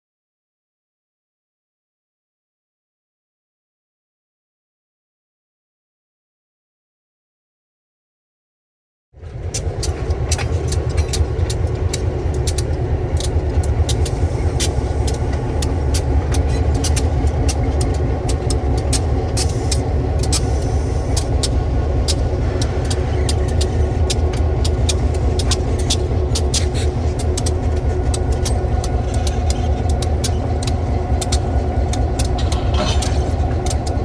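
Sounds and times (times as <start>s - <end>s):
diesel locomotive rumbling: 9.2s - 34.0s.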